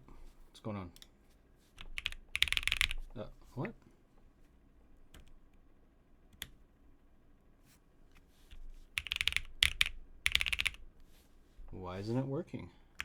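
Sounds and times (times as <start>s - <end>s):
mechanical keyboard typing: 1.8s - 3.0s, 9.0s - 10.8s.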